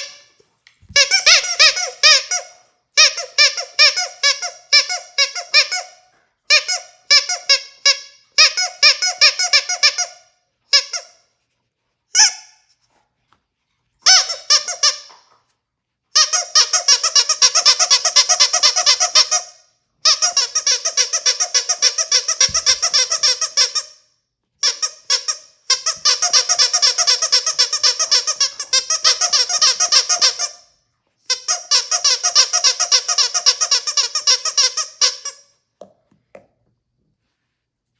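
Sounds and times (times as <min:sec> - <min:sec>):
squeaky dog toy squeaking: 0:00.0 - 0:11.3, 0:12.1 - 0:12.7, 0:14.0 - 0:15.4, 0:16.1 - 0:24.0, 0:24.6 - 0:35.6.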